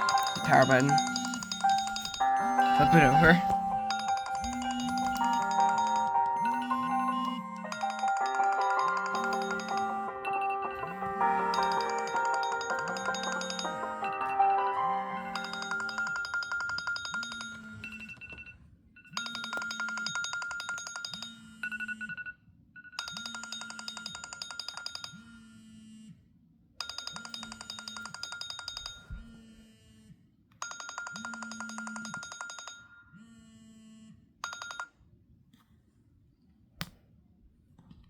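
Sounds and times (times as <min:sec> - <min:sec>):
phone vibration buzzing: 0:00.0 - 0:18.2
electronic alarm melody: 0:00.0 - 0:18.4.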